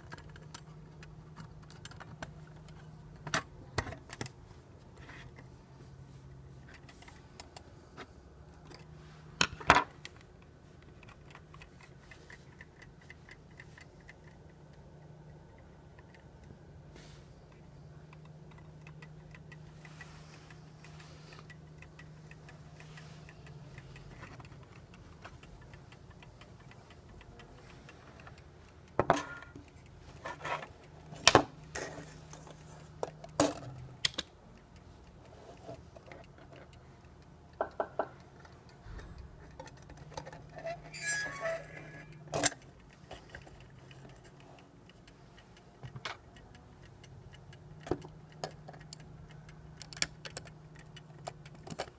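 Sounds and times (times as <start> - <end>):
steady low hum: 0.0 - 51.9
clicks of small clock parts: 17.5 - 51.9.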